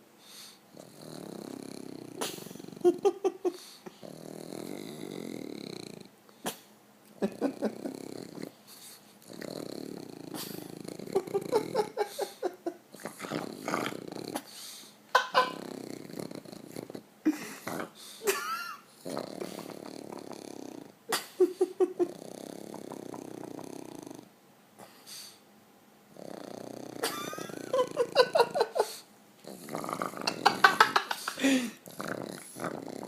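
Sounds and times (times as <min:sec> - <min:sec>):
dog snoring: 0:00.4 - 0:03.1, 0:03.9 - 0:06.1, 0:07.2 - 0:12.3, 0:12.9 - 0:14.7, 0:15.4 - 0:17.0, 0:19.0 - 0:21.0, 0:21.8 - 0:24.9, 0:26.1 - 0:33.0.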